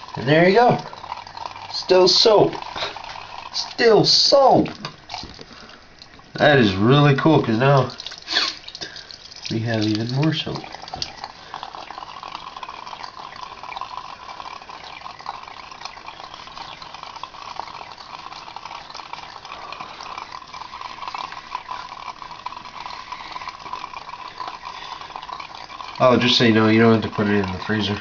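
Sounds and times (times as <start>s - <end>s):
tap water running into sink: 0.0s - 28.0s
water splashes and drips: 0.0s - 28.0s.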